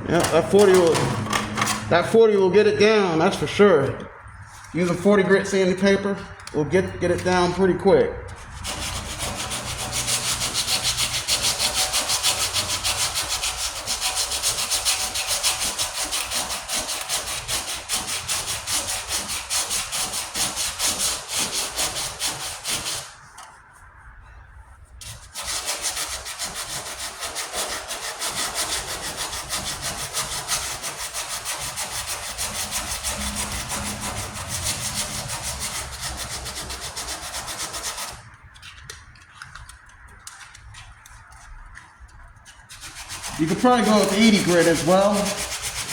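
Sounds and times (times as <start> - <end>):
sandpaper rasping on metal: 8.3 - 23.2, 25.0 - 38.3, 42.7 - 45.9.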